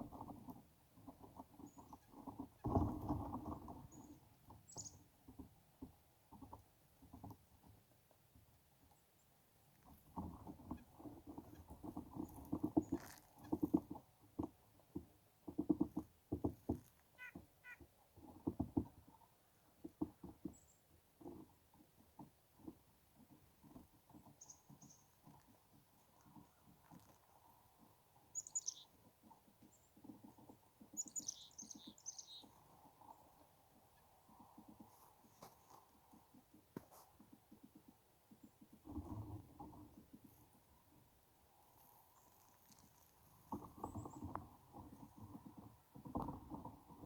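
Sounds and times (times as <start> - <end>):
soft tapping and rustling: 0.0 - 8.2, 9.7 - 47.0
chickadees calling: 28.4 - 28.9, 31.0 - 32.6.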